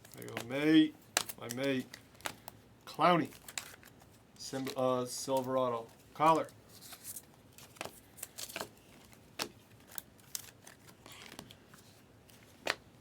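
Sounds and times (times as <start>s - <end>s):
cards being flipped through: 1.2s - 2.6s, 3.2s - 5.6s, 6.2s - 12.8s.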